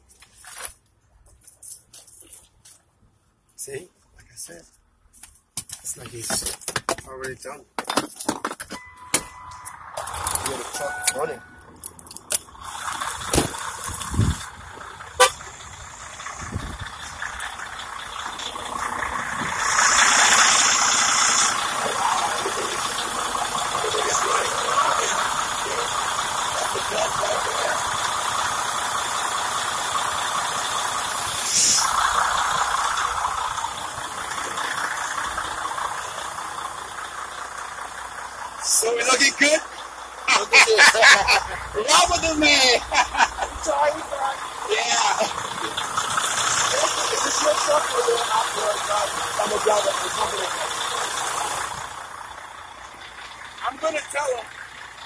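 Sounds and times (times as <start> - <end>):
truck engine running: 8.8 - 55.0
brief hiss: 31.3 - 31.9.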